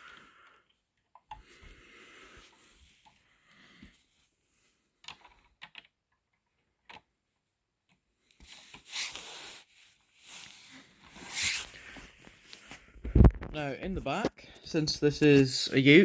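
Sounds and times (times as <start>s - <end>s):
plastic model rubbing and shuffling: 8.4s - 13.6s.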